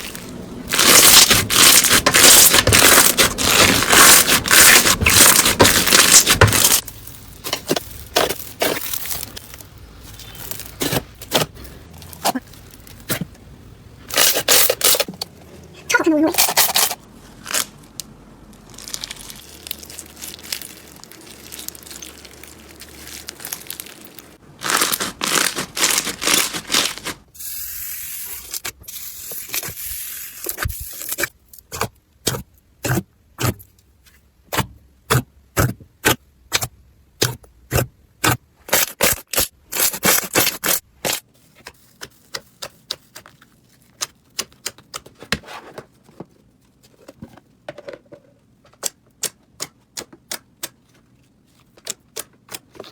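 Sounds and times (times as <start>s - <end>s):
slime crackling and crunching: 0.0s - 13.2s, 16.6s - 27.3s.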